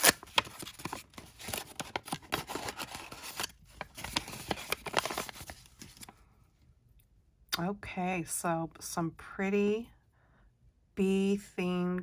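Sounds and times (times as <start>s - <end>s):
packaging bag crinkling: 0.0s - 6.1s.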